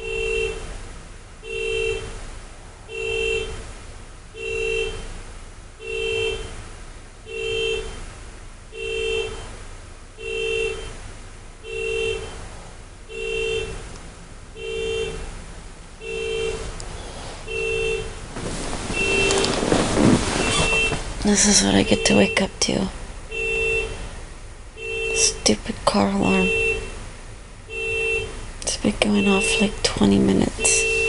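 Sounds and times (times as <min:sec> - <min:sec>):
car alarm horn honks: 0:00.0 - 0:00.7, 0:01.4 - 0:02.1, 0:02.9 - 0:03.6, 0:04.3 - 0:05.1, 0:05.8 - 0:06.6, 0:07.2 - 0:08.0, 0:08.7 - 0:09.5, 0:10.2 - 0:11.0, 0:11.6 - 0:12.4, 0:13.1 - 0:13.8, 0:14.5 - 0:15.2, 0:16.0 - 0:16.7, 0:17.4 - 0:22.6, 0:23.3 - 0:24.0, 0:24.7 - 0:25.6, 0:26.2 - 0:27.0, 0:27.7 - 0:28.4, 0:29.0 - 0:31.0.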